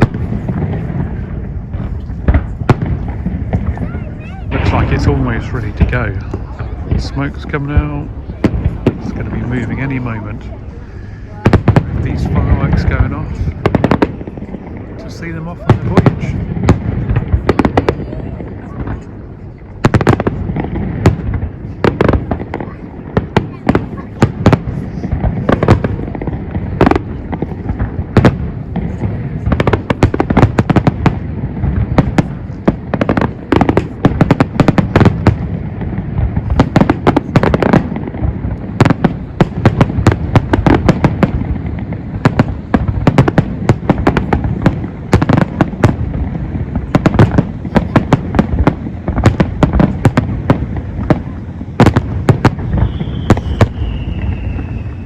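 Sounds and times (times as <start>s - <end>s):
continuous low rumble: 0.0s - 55.0s
firework bangs: 0.0s - 55.0s
falling firework whistle: 52.4s - 55.0s.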